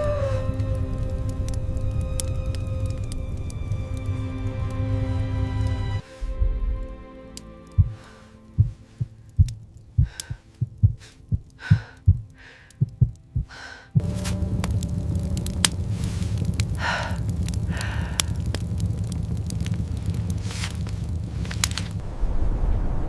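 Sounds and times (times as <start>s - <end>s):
low hum: 0.0s - 23.0s
heartbeat thumps: 7.8s - 8.0s, 8.6s - 14.3s
heavy breathing: 7.8s - 14.0s, 15.8s - 18.8s
steady hiss: 14.0s - 23.0s.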